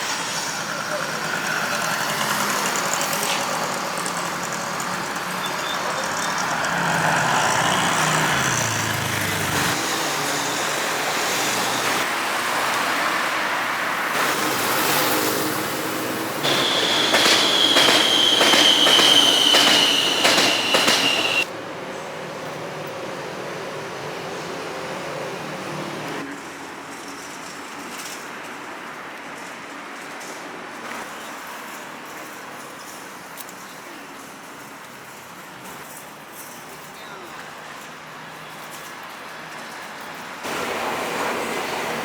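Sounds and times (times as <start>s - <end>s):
steel wheels squealing on track: 0.0s - 12.1s, 14.2s - 21.5s
metro train running on rails: 0.0s - 26.3s, 40.2s - 42.0s.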